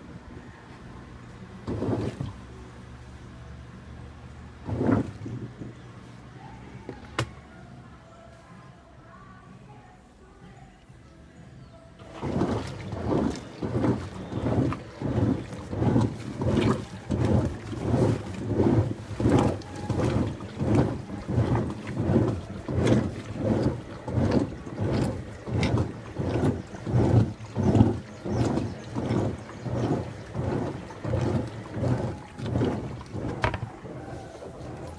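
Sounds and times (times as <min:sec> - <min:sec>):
washing machine sloshing: 0:00.0 - 0:07.4, 0:12.0 - 0:34.9.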